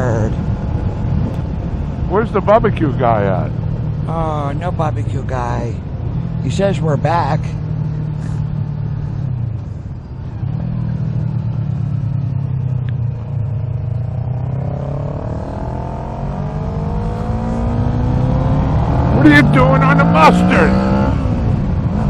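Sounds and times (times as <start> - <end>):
motorcycle engine accelerating: 7.5 - 22.0.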